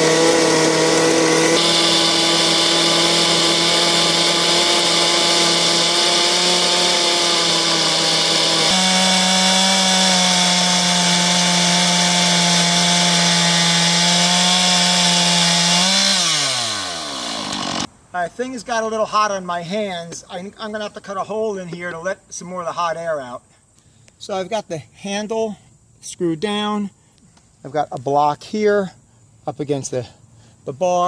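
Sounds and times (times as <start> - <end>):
chainsaw cutting log: 0.0 - 17.9.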